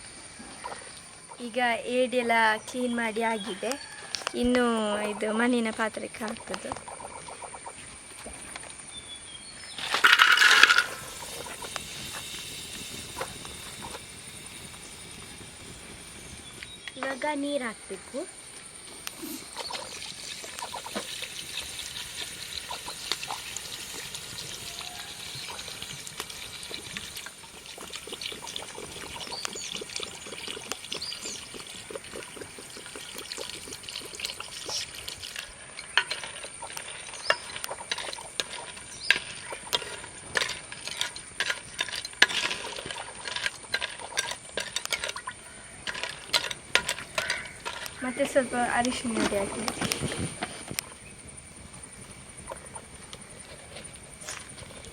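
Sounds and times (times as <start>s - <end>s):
water poured into clay pot: 9.7s - 17.0s, 18.5s - 54.9s
crabs clinking in pot: 9.7s - 17.1s, 19.0s - 50.3s.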